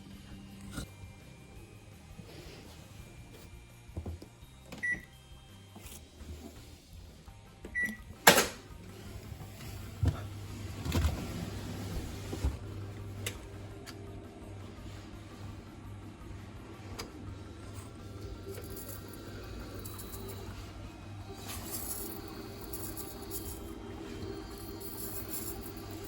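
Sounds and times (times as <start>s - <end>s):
washing machine drum hum: 7.6s - 24.8s
control panel beeps: 7.8s - 8.0s.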